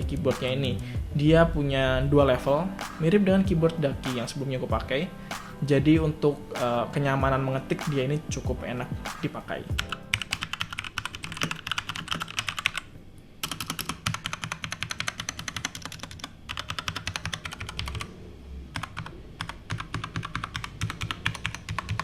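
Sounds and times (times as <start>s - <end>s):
mechanical keyboard typing: 9.7s - 18.1s, 18.7s - 22.0s.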